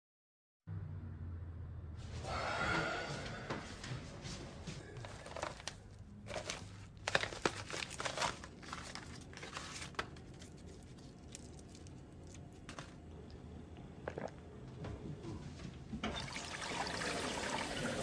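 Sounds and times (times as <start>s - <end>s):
crinkling and rustling: 4.3s - 13.4s.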